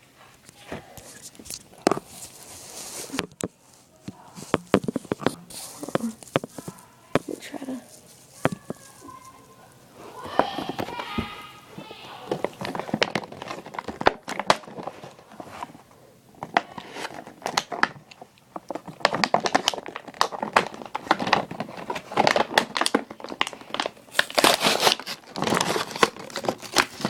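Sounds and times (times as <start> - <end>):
plastic and cardboard crinkling: 0.0 - 27.0
packaging tearing: 12.3 - 15.7, 16.4 - 27.0.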